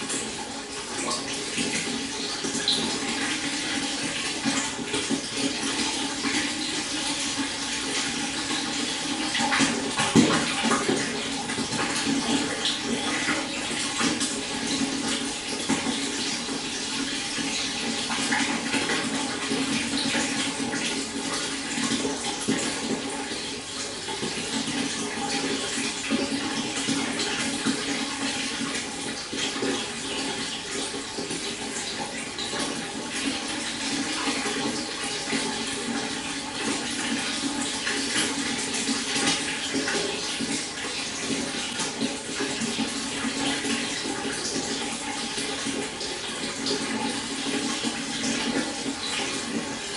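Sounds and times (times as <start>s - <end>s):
stream water flowing: 0.0s - 8.7s
small splashes and trickles: 0.0s - 49.9s.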